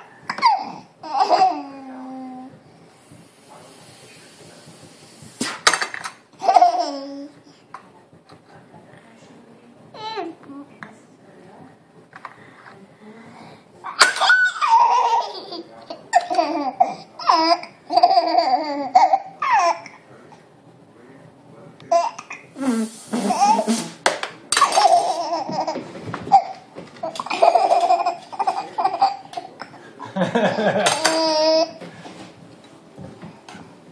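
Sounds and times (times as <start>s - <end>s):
baby laughing: 0.3s - 1.9s, 6.4s - 7.3s, 14.2s - 20.0s, 23.2s - 23.9s, 24.6s - 29.8s, 30.5s - 31.8s.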